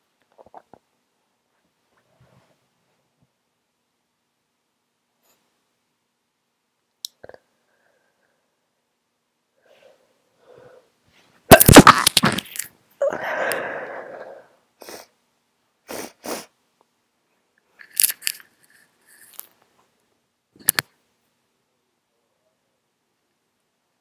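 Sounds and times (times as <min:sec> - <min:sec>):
breathy noise: 0:09.6 - 0:15.2.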